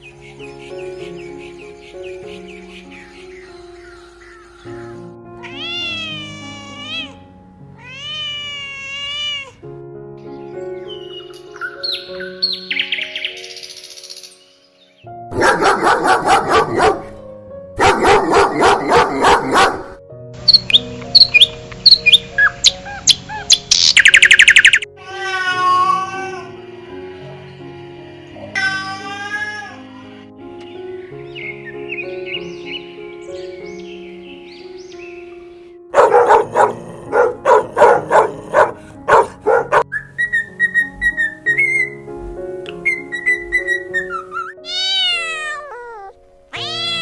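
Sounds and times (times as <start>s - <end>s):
soft background music: 0.0s - 47.0s
dog barking: 15.3s - 17.2s, 17.8s - 20.0s, 35.9s - 39.9s
small bird chirping: 20.4s - 24.9s.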